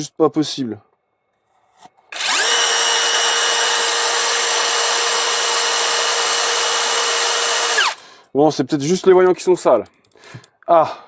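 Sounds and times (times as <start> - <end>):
power tool motor whining: 2.1 - 8.0.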